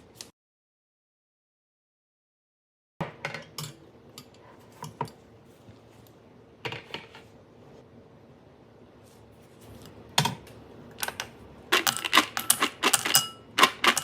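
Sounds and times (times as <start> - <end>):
utensils and dishes clinking: 11.0 - 14.0.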